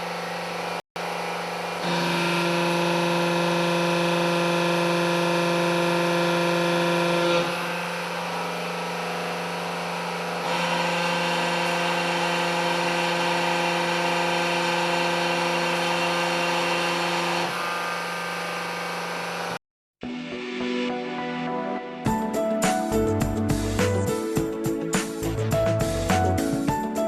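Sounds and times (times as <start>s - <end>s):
hydraulic pump motor humming: 0.0s - 19.6s.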